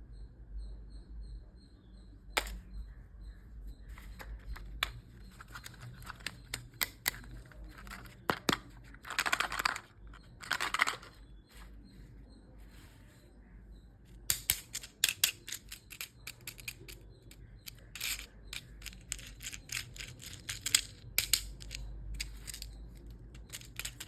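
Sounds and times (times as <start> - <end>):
plastic packaging clicks and taps: 4.2 - 9.9.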